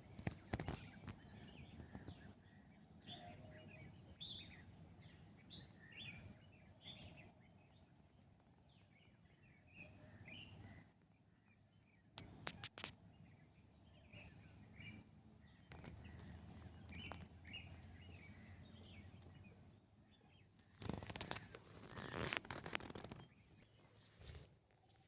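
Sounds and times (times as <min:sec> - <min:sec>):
faint birds chirping: 0:00.0 - 0:25.0
sharp clicks: 0:12.2 - 0:12.9
rustling noise: 0:12.4 - 0:12.9, 0:20.8 - 0:23.3.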